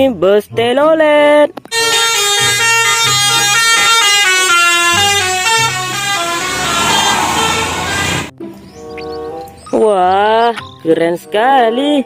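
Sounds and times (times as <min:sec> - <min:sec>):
multi-tone bus horn tune: 0:01.7 - 0:08.3.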